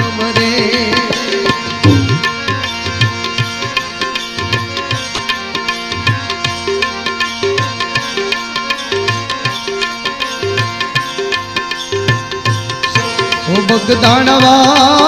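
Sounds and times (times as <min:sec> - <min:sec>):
keyboard melody: 0:00.0 - 0:15.0
plucked string melody: 0:00.0 - 0:15.0
hand drum rhythm: 0:00.7 - 0:03.9.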